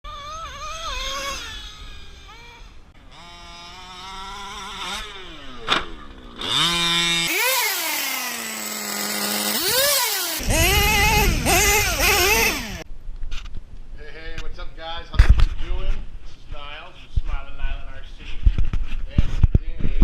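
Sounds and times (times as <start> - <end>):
small two-stroke engine revving: 0.1 - 12.9.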